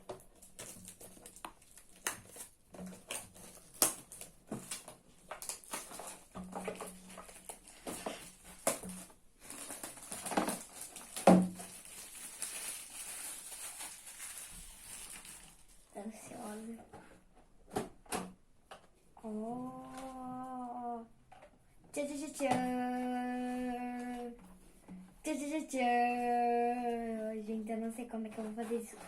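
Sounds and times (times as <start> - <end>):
packaging crinkling and rustling: 0.0 - 16.0.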